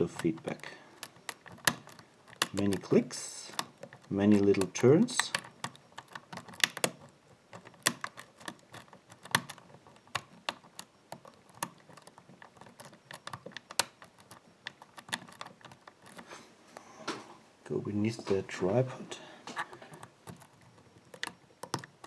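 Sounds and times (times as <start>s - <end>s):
lock pick clicking: 0.0s - 16.3s, 19.5s - 22.0s.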